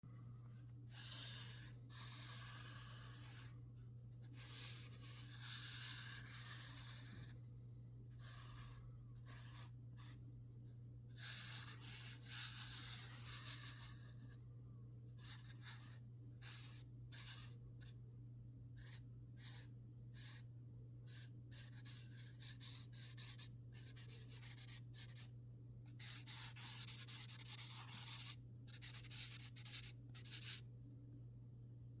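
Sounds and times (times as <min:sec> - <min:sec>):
steady low hum: 0:00.0 - 0:32.0
drawing tool scratching paper: 0:00.9 - 0:03.5, 0:04.2 - 0:07.4, 0:08.1 - 0:10.2, 0:11.2 - 0:14.3, 0:15.2 - 0:17.6, 0:18.8 - 0:20.4, 0:21.1 - 0:25.3, 0:25.9 - 0:30.6.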